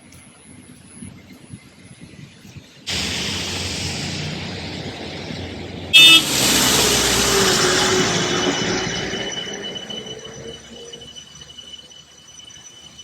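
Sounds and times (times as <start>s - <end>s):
road traffic noise: 2.9s - 11.6s
vehicle horn honk: 5.9s - 9.2s.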